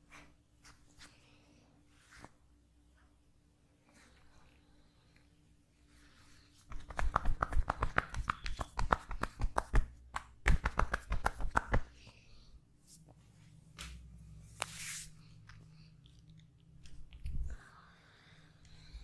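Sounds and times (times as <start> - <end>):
hands slapping body in massage: 6.6 - 12.0.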